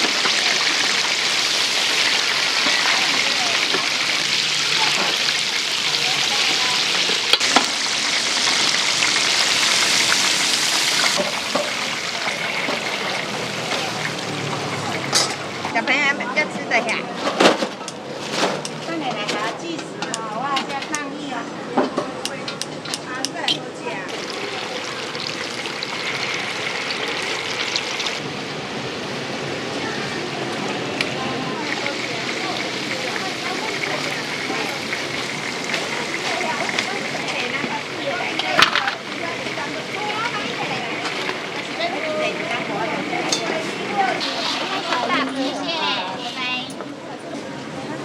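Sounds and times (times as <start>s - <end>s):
food deep-frying in oil: 0.0s - 15.8s, 23.9s - 46.5s.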